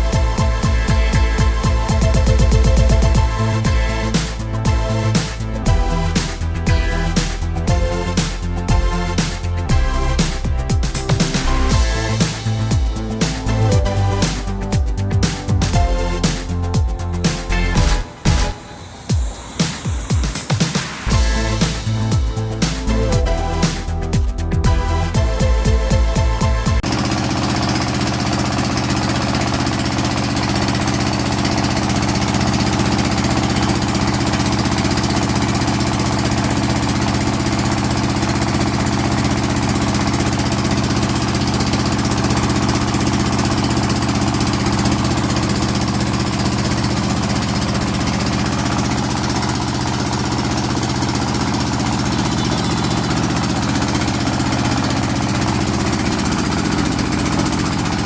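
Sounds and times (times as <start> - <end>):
diesel engine droning: 26.7 - 58.0.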